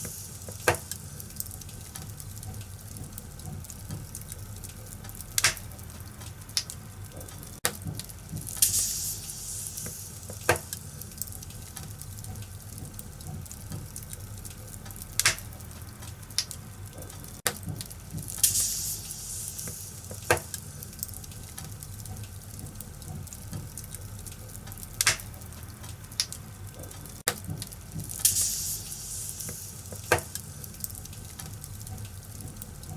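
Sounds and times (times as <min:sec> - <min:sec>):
short hissing bursts: 0:00.0 - 0:01.3, 0:08.6 - 0:11.1, 0:18.4 - 0:20.9, 0:28.2 - 0:30.8
fire popping: 0:00.0 - 0:32.9
wood fire crackling: 0:00.0 - 0:32.9.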